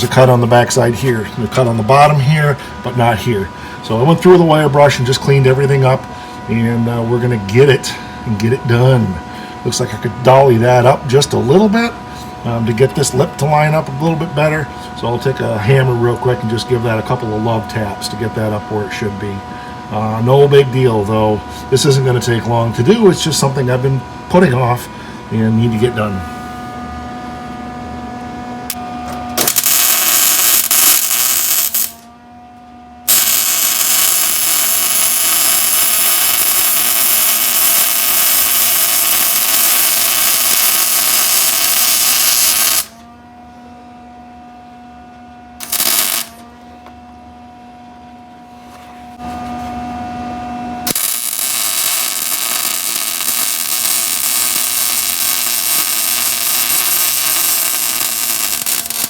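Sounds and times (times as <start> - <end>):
electrical hum: 0.0 - 59.0
welding arc crackle: 29.4 - 32.0, 33.1 - 43.0, 45.6 - 46.4, 50.9 - 59.0.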